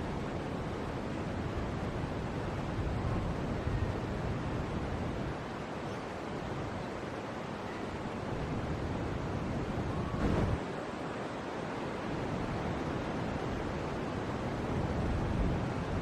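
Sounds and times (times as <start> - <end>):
steady rushing noise: 8.3 - 16.0.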